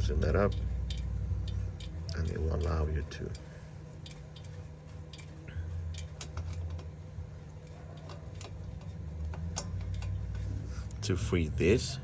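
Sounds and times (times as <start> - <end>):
wrench clicking on metal bolt: 0.0 - 4.5
steady low hum: 0.0 - 12.0.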